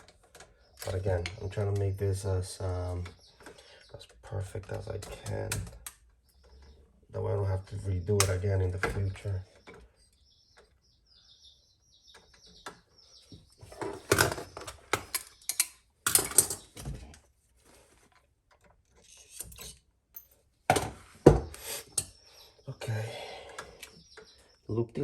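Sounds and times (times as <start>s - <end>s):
hand tools clicking against wire: 14.1s - 16.8s.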